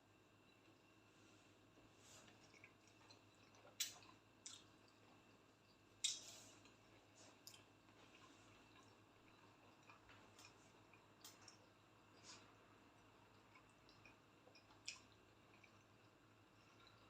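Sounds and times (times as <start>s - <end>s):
eating clicks and smacks: 2.4s - 11.8s, 13.0s - 17.0s.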